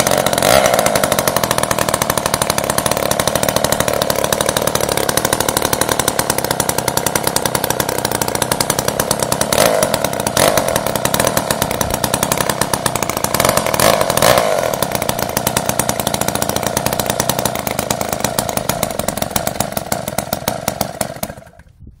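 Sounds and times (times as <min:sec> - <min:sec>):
chainsaw engine running: 0:00.0 - 0:21.8.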